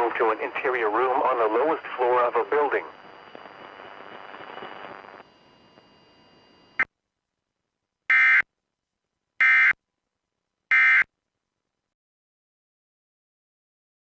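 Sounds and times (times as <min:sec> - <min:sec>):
faint radio hiss: 0:00.0 - 0:09.4.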